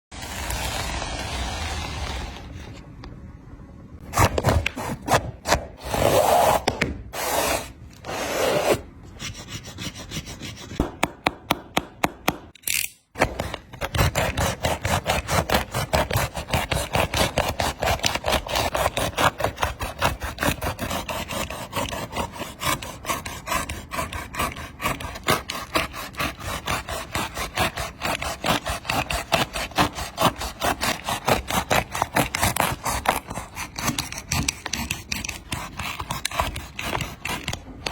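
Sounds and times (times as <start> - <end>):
rasping scraping cutting strokes: 13.2 - 37.9.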